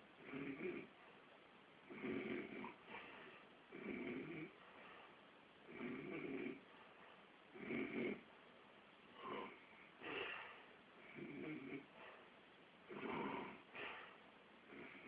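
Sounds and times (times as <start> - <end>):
quiet breathing: 0.0 - 15.0
man snoring: 0.2 - 0.9, 1.9 - 2.8, 3.7 - 4.6, 5.7 - 6.6, 7.6 - 8.2, 11.0 - 11.9, 12.9 - 13.7.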